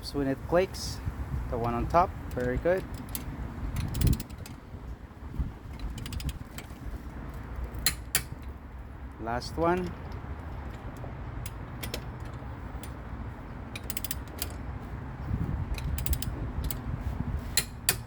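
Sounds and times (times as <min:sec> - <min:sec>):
torque wrench clicking: 0:01.6 - 0:04.6, 0:05.6 - 0:06.7, 0:13.7 - 0:14.6, 0:15.7 - 0:16.9, 0:17.5 - 0:18.0.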